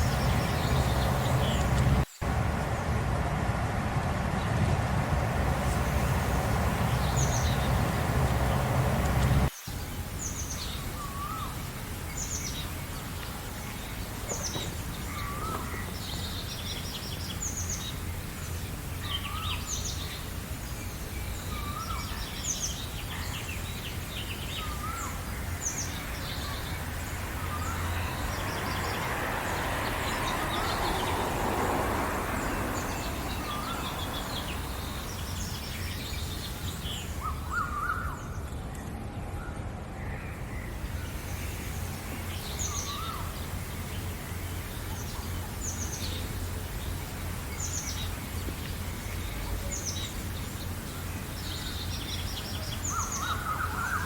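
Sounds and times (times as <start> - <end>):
birds singing and chirping: 0.0 - 3.6, 4.3 - 31.7, 32.3 - 38.6, 40.0 - 54.0
low rumble: 0.0 - 9.5
broad rushing noise: 0.0 - 10.5, 23.4 - 37.6, 38.5 - 53.5.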